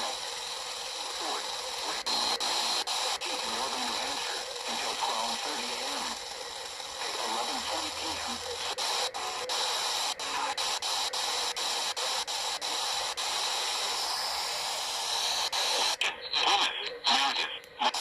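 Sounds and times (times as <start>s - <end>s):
radio static hiss: 0.0s - 18.0s
faint garbled voice: 1.2s - 6.2s, 7.0s - 9.6s, 10.2s - 10.7s, 15.7s - 18.0s.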